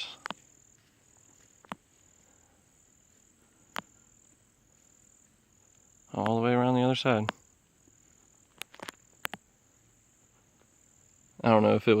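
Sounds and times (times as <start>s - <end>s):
insect trill: 0.0s - 12.0s.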